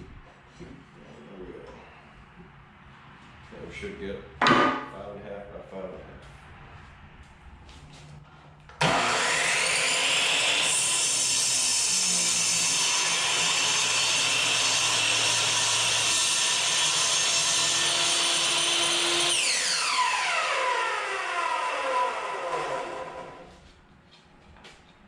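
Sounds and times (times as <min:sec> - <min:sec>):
saw blade spinning down whine: 0:08.8 - 0:23.5
electric saw cutting wood: 0:08.8 - 0:23.6.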